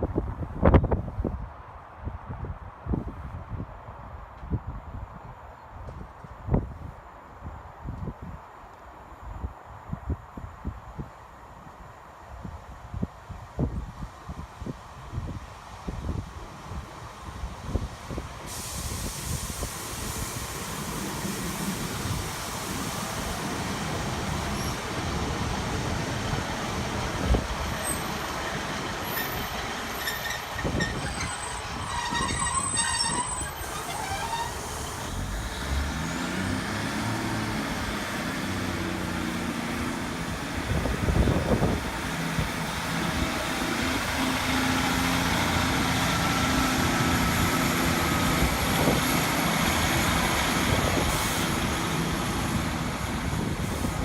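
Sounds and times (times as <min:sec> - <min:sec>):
train rumbling past: 0:14.8 - 0:54.0
diesel engine low drone: 0:33.7 - 0:54.0.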